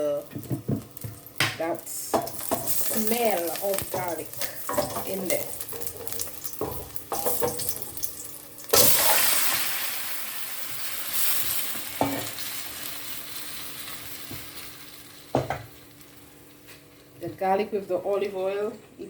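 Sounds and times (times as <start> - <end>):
garlic sizzling in hot oil: 0.0 - 17.0.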